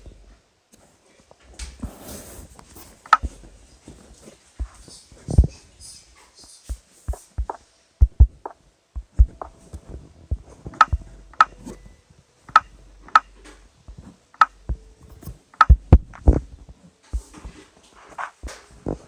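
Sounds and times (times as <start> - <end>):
knocks and taps: 6.7 - 9.6.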